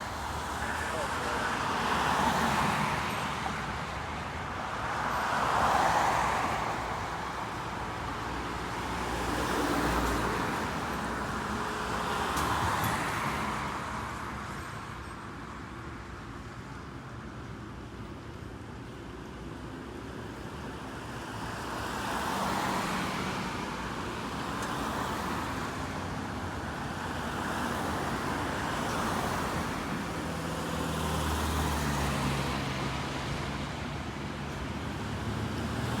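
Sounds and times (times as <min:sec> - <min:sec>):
vehicles passing: 0:00.0 - 0:14.9, 0:20.1 - 0:36.0.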